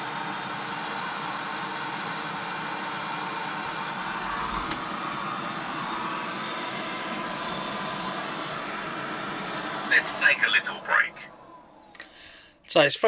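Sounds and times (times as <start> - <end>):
robot vacuum whirring: 3.0 - 11.9.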